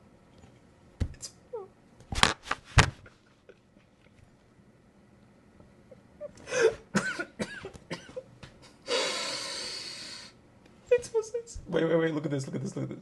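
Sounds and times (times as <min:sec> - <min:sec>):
person coughing: 0:06.5 - 0:08.3.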